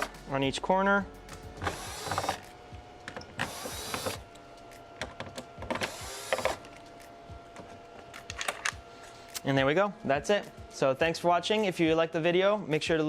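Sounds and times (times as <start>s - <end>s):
electric screwdriver whirring: 1.6s - 2.5s, 3.4s - 4.3s, 5.6s - 6.7s.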